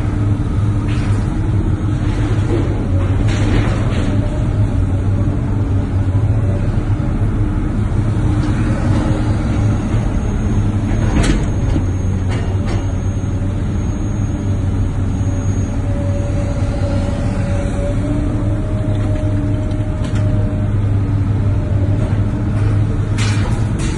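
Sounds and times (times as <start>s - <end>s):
diesel engine humming: 0.0s - 23.9s.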